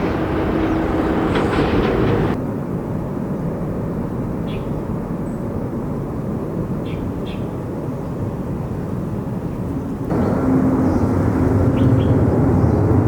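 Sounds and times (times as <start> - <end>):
jet engines rumbling: 0.0 - 2.4, 10.0 - 13.0.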